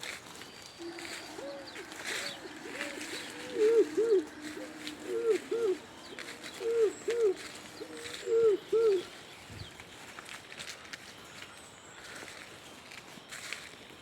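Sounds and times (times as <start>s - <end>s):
owl hooting: 0.8s - 9.2s.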